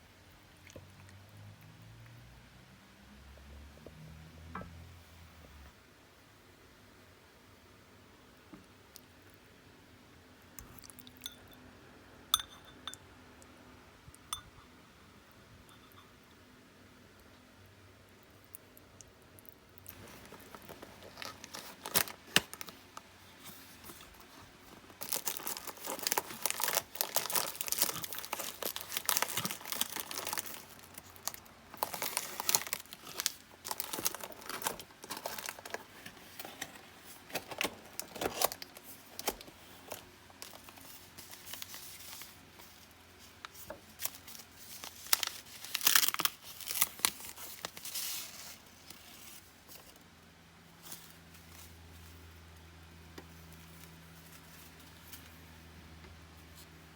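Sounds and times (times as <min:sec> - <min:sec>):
crinkling and tearing: 0:19.8 - 0:50.0.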